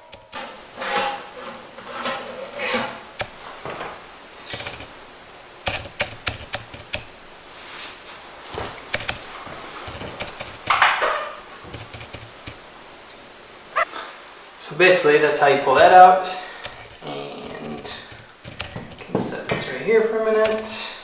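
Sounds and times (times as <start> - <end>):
metal scraping rattle: 0.0 - 4.9.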